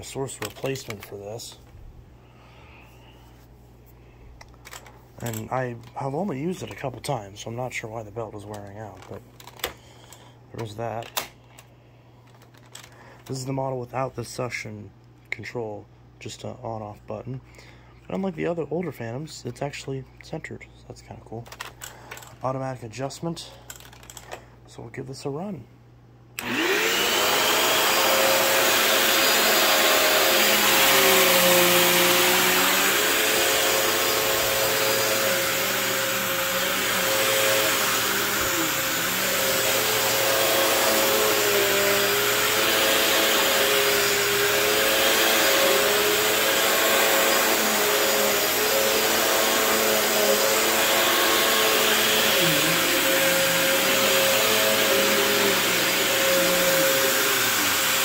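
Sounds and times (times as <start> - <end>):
vacuum cleaner running: 26.4 - 58.0.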